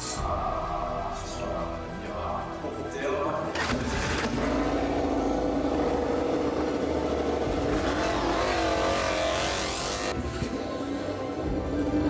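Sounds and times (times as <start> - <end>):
motorcycle engines revving: 3.5 - 12.0.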